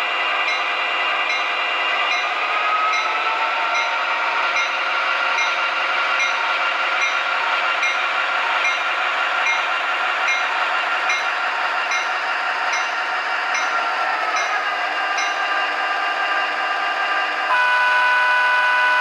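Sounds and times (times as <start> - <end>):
diesel engine sound from small speaker: 17.4 - 19.0.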